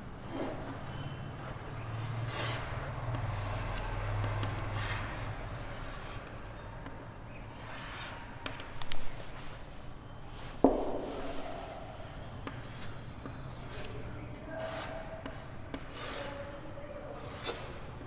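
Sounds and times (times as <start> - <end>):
writing strokes on a board: 0.3 - 17.8
sharp knock: 10.6 - 11.4.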